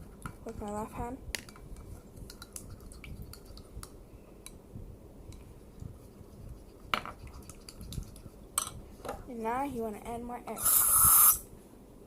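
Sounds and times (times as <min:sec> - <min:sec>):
utensil stirring in container: 0:01.8 - 0:03.8, 0:05.6 - 0:08.4.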